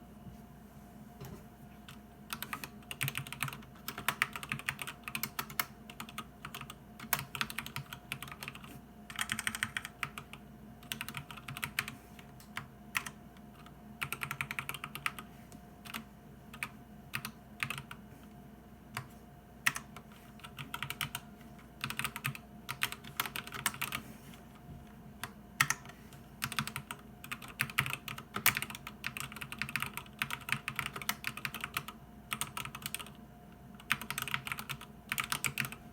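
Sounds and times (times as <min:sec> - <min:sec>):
mechanical keyboard typing: 0:01.9 - 0:18.0, 0:19.0 - 0:21.2, 0:21.8 - 0:24.0, 0:25.2 - 0:33.2, 0:33.8 - 0:35.8.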